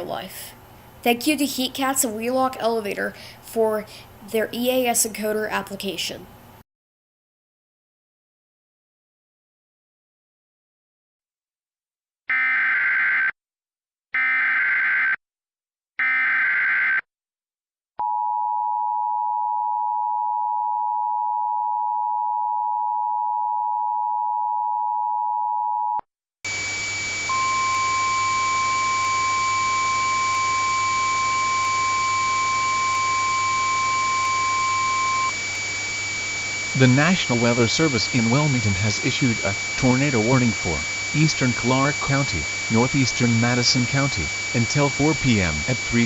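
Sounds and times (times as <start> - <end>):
hiss with high whine: 26.5 - 46.0
steady tone: 26.5 - 46.0
two-tone attention signal: 27.3 - 35.4
digital data bursts: 27.3 - 35.5, 36.2 - 46.0.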